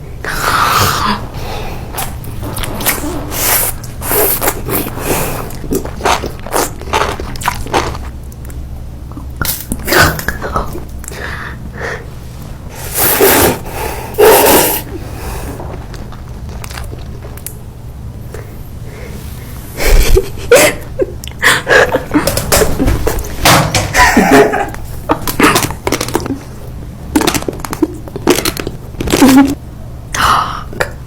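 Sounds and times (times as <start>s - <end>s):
person biting and chewing: 1.9s - 8.6s, 12.8s - 17.6s, 25.1s - 29.6s.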